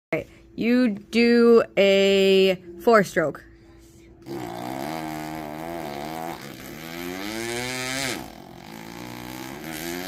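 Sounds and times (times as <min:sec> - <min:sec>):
boy imitating motorbike engine: 0:04.2 - 0:10.0.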